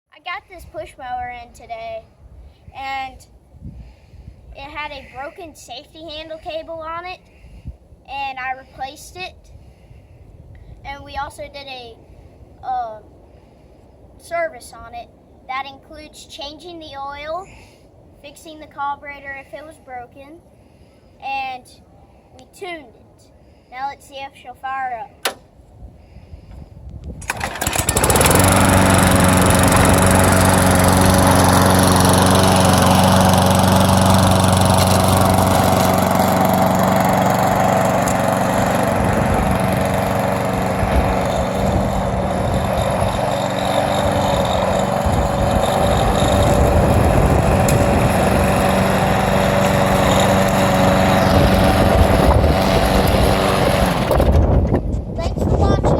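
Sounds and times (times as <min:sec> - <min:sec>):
lawn mower engine running: 0:27.2 - 0:54.7.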